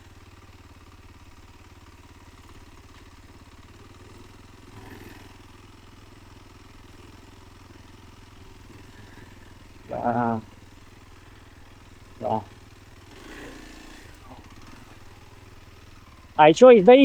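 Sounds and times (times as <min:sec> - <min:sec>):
motorcycle engine idling: 0:00.0 - 0:17.0.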